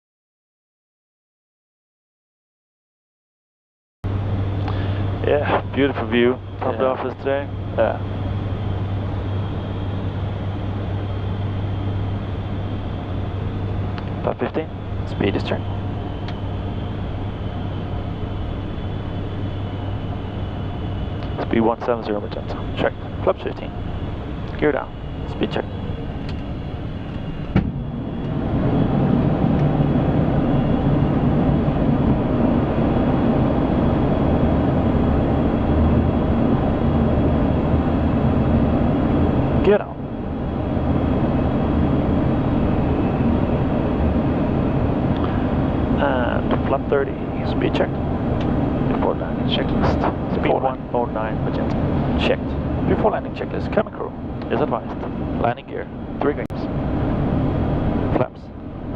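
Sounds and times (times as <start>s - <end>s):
propellers droning: 4.0s - 58.9s
turboprop and airflow rumble: 4.0s - 58.9s
rushing airflow: 24.1s - 39.6s.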